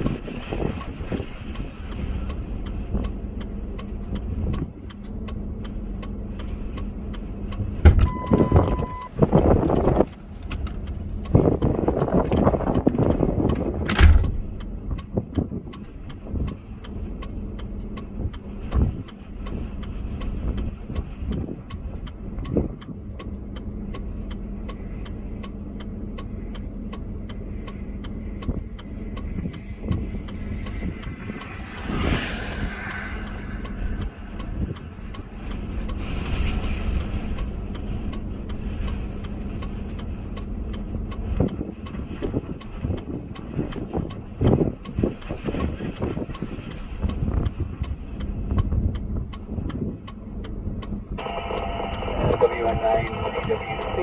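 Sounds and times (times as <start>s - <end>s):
fast regular ticking: 0.0s - 7.8s, 9.0s - 54.0s
engine humming: 0.0s - 54.0s
sharp thump: 7.8s - 8.1s, 13.8s - 14.4s
loud rush of noise: 30.5s - 37.2s, 51.2s - 54.0s.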